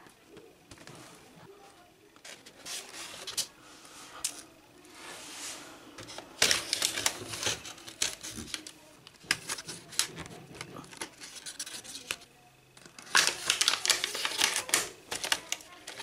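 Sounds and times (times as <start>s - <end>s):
plastic toys clicking and knocking: 6.0s - 16.0s.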